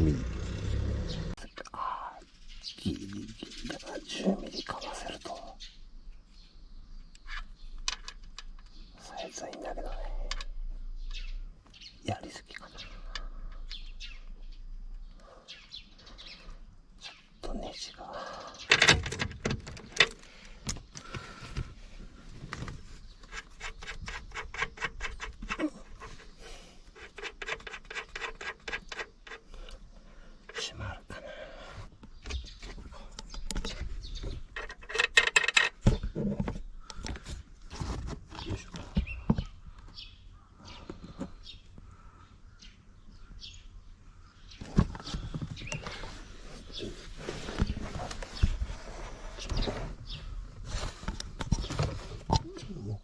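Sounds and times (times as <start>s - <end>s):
rattling and handling noise: 18.6s - 29.8s, 31.9s - 39.8s, 44.6s - 52.8s
tools scraping: 22.6s - 29.8s, 33.5s - 38.6s
hand tool clicking on bolt: 34.6s - 35.8s.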